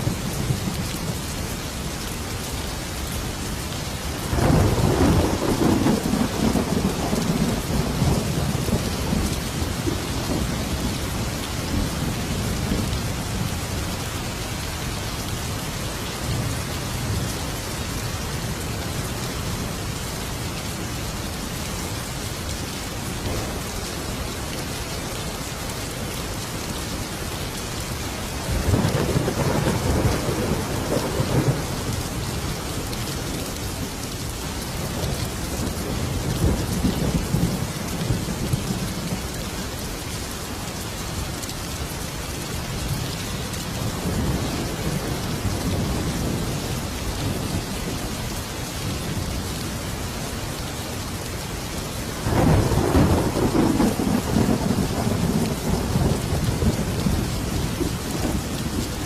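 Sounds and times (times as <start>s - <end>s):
steady rain: 0.0s - 59.0s
rolling thunder: 4.3s - 13.4s, 28.5s - 32.1s, 52.2s - 59.0s.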